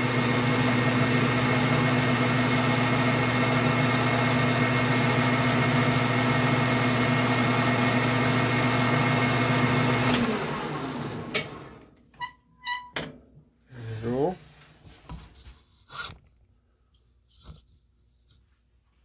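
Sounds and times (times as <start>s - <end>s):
metal lathe humming: 0.0s - 11.8s.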